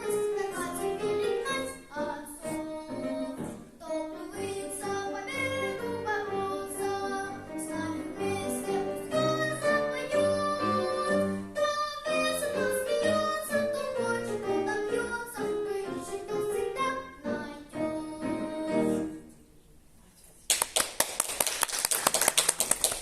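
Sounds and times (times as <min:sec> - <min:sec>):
boy singing classical style: 0:00.0 - 0:19.3
applause: 0:20.5 - 0:23.0.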